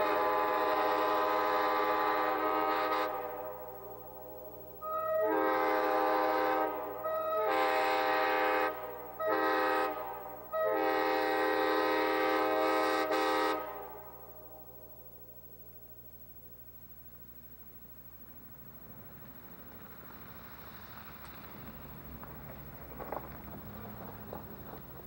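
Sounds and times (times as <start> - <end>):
multi-chime train air horn: 0.0 - 14.8.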